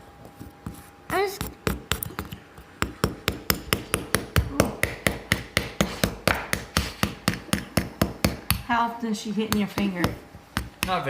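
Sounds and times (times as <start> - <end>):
hammer tapping chisel into plaster: 1.4 - 8.7, 9.5 - 11.0.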